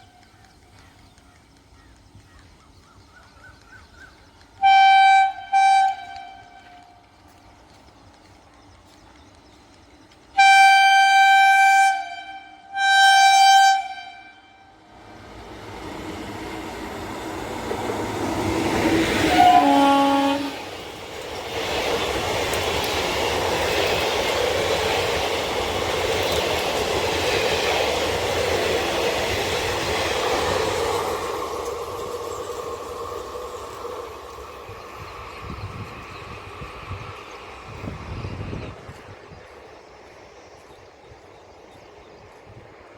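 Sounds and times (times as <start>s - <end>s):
train wheels rumbling on rails: 0.0s - 42.9s
locomotive horn blasts: 4.6s - 7.0s, 10.4s - 14.8s, 19.2s - 20.7s.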